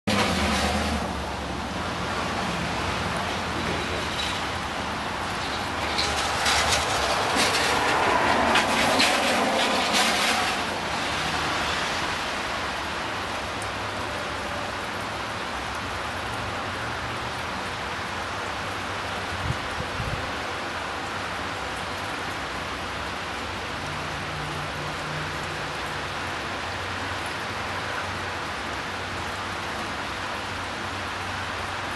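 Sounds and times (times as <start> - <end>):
rain hissing: 0.0 - 31.9
vehicle passing: 0.1 - 12.5.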